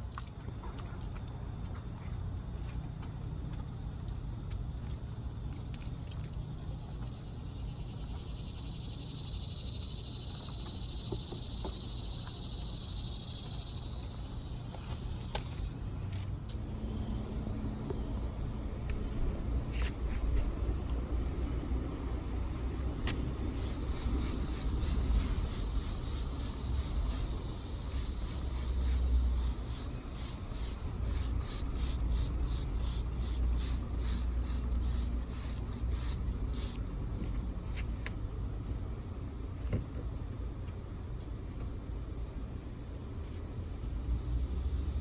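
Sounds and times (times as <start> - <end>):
hissing scrubbing strokes: 23.4 - 36.8.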